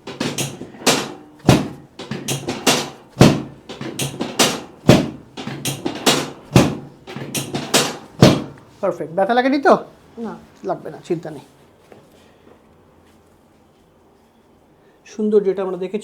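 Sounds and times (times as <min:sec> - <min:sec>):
drop table clacking: 0:00.0 - 0:08.8.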